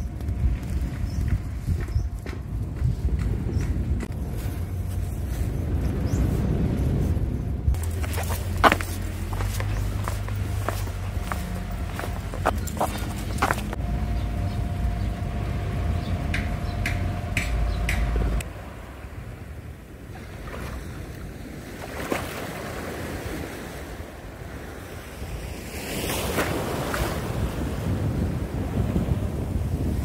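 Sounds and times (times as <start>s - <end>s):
low hum: 0.0s - 19.6s
wind buffeting microphone: 0.0s - 21.8s, 22.4s - 30.0s
beach surf: 15.3s - 30.0s.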